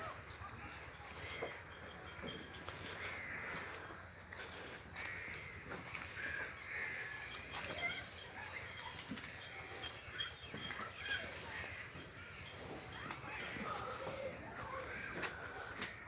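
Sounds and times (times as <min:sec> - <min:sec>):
buffaloes chewing grass: 0:00.0 - 0:16.0
birds cawing: 0:02.2 - 0:08.3, 0:09.6 - 0:16.0.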